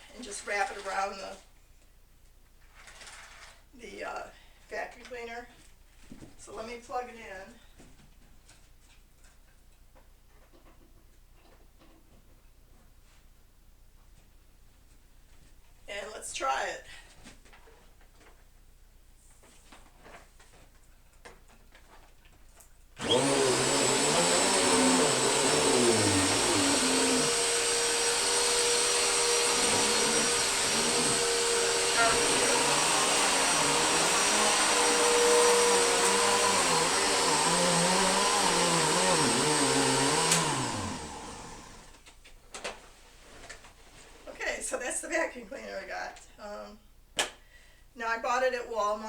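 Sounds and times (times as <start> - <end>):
vacuum cleaner running: 23.0 - 42.0.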